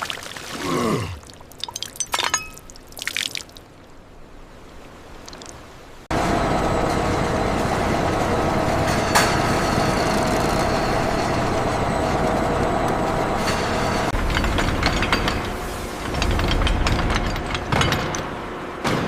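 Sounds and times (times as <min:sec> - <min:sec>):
heavy machinery running: 0:06.1 - 0:19.0.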